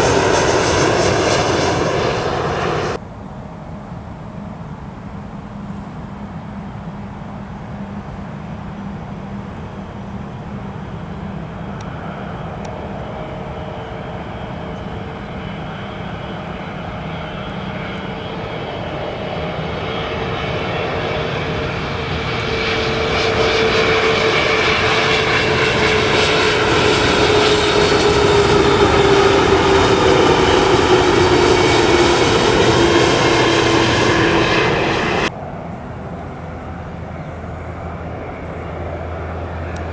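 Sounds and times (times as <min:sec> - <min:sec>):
jet engines passing: 0:00.0 - 0:39.9.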